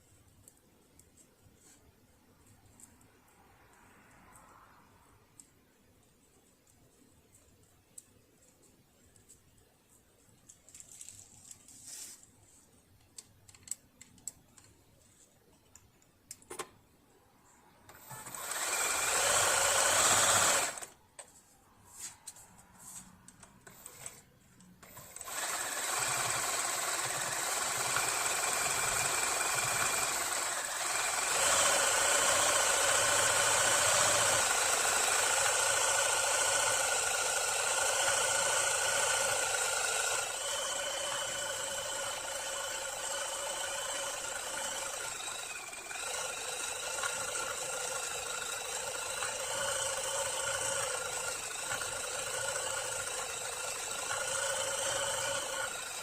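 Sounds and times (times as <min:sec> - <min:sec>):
sewing machine running: 0:17.9 - 0:20.9, 0:24.8 - 0:56.0.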